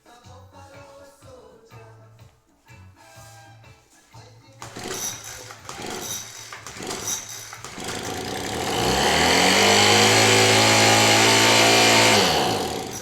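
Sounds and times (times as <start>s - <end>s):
leaf blower engine running: 4.6s - 13.0s.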